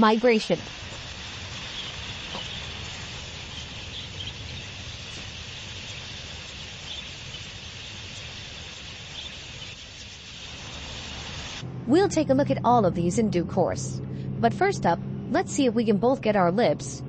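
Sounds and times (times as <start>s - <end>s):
insect chorus: 0.5s - 11.6s.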